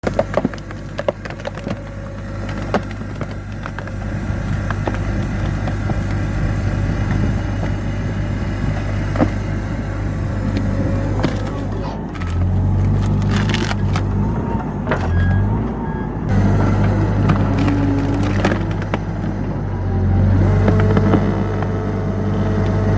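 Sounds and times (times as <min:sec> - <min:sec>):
wood splitting cracks: 0:00.0 - 0:09.6, 0:10.4 - 0:15.2, 0:16.6 - 0:19.6
diesel engine under load: 0:00.0 - 0:22.9.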